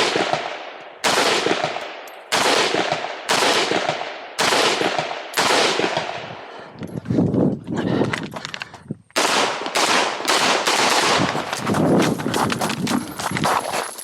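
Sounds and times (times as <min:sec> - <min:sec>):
rifle shots echoing: 0:00.0 - 0:06.5, 0:09.2 - 0:11.5.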